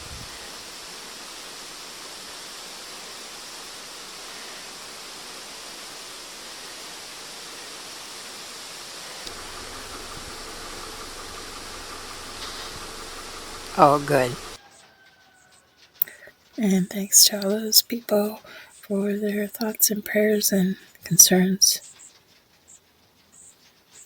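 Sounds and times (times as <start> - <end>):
low steady hum: 0.0 - 14.6
rushing creek water: 0.0 - 14.6.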